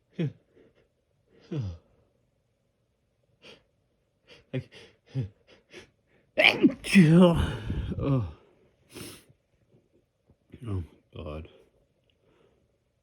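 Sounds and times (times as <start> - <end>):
person sighing: 6.4 - 8.4.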